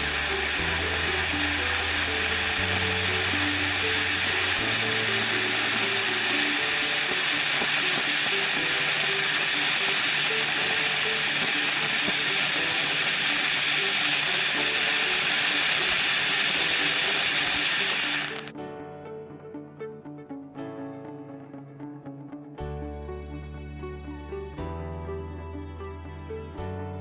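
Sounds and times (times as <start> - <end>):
firework burning with loud hiss: 0.0 - 18.5
background music: 0.0 - 27.0.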